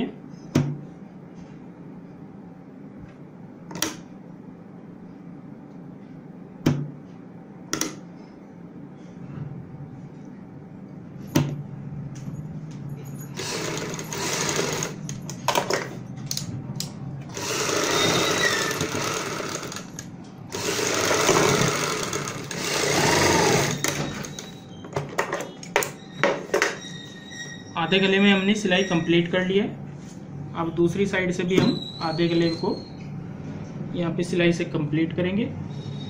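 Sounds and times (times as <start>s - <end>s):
sewing machine stitching fabric: 13.4s - 15.0s, 17.3s - 24.5s.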